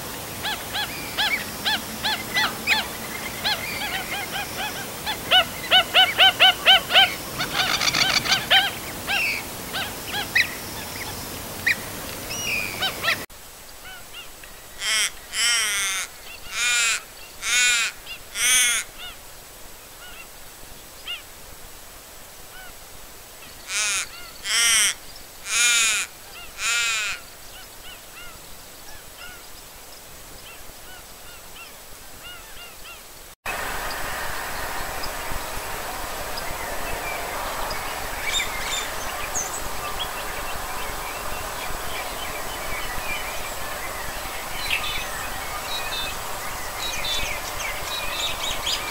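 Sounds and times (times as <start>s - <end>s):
birds calling: 0.4s - 13.3s.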